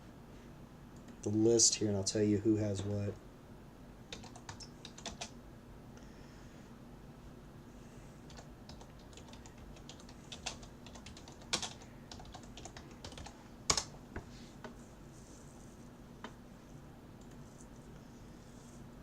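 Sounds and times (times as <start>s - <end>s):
faint steady hum: 0.0s - 19.0s
computer keyboard typing: 4.1s - 5.4s, 8.2s - 14.0s.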